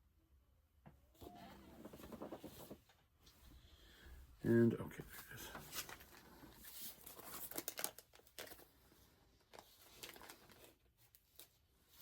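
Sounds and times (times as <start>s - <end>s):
plastic bag crinkling: 5.5s - 11.6s.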